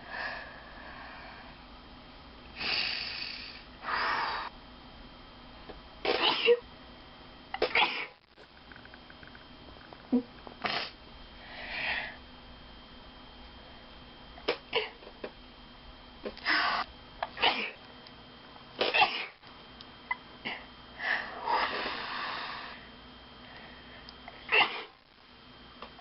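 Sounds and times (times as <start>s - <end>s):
person sneezing: 6.1s - 6.6s, 7.6s - 8.2s, 10.6s - 11.0s, 14.7s - 15.0s, 17.4s - 17.8s, 18.8s - 19.4s, 24.5s - 25.0s.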